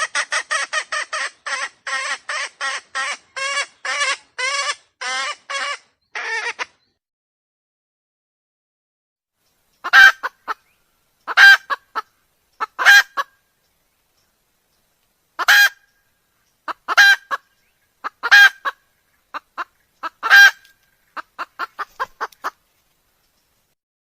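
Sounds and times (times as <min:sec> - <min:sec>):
junglefowl clucking: 0:00.0 - 0:06.8, 0:09.8 - 0:13.4, 0:15.4 - 0:15.9, 0:16.6 - 0:22.6
junglefowl harsh calls: 0:00.0 - 0:06.8, 0:09.8 - 0:10.6, 0:11.3 - 0:13.4, 0:15.4 - 0:15.9, 0:16.7 - 0:22.6.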